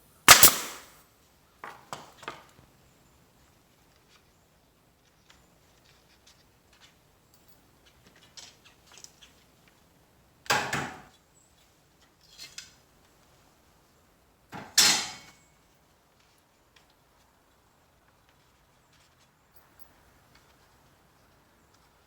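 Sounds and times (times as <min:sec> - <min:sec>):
loud clattering impacts: 0:00.3 - 0:00.9.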